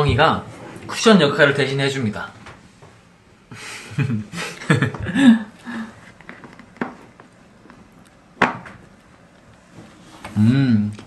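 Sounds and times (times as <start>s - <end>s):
man laughing breathily: 3.5s - 6.0s.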